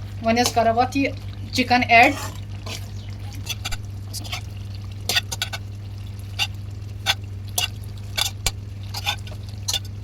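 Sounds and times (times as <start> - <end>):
spoon stirring thick curry: 6.3 - 10.0.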